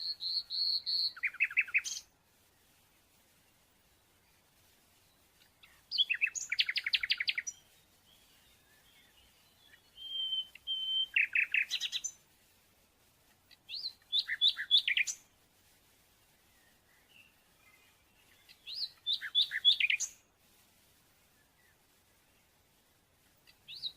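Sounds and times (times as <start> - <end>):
small bird chirping: 0.0 - 23.9
bird whistled note: 10.0 - 11.5.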